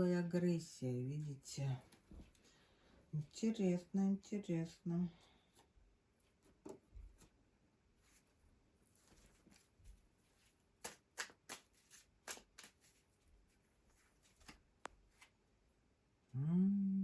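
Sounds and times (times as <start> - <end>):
cards shuffled by hand: 8.9 - 15.4
card snaps: 10.8 - 12.8.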